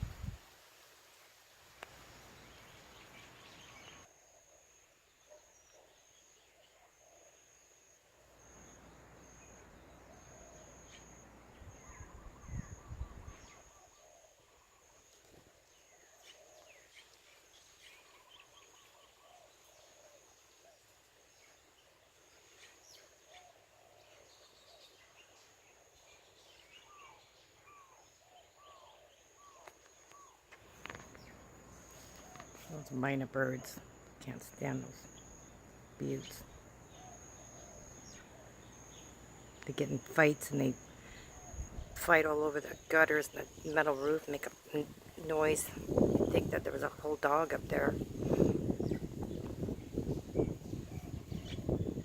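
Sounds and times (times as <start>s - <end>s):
wind rumbling on microphone: 0.0s - 0.5s, 11.5s - 13.7s, 41.3s - 42.2s, 44.5s - 52.0s
birds chirping: 2.2s - 7.5s, 8.4s - 52.0s
insect trill: 7.0s - 15.1s.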